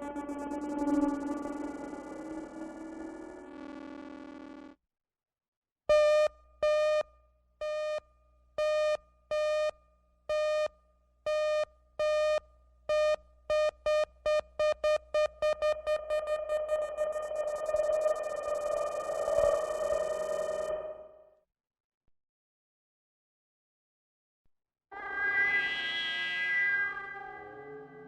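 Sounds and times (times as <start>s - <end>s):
buzzy synth tone: 0.0s - 4.7s, 15.7s - 21.2s
synthesized electronic beeps: 0.0s - 4.7s, 15.2s - 21.2s.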